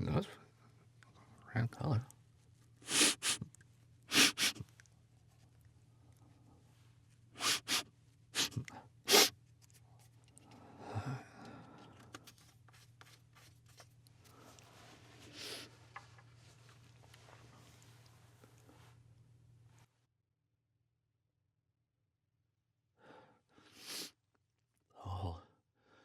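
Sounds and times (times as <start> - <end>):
man sniffing sharply: 2.8 - 3.4, 4.1 - 4.6, 7.4 - 7.8, 8.4 - 9.3, 15.3 - 15.7, 23.6 - 24.2
soft breath: 6.0 - 7.8.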